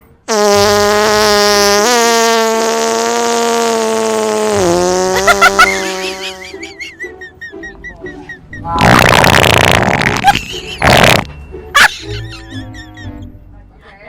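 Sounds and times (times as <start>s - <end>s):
fart sound effect: 0.3s - 6.6s, 8.8s - 11.3s.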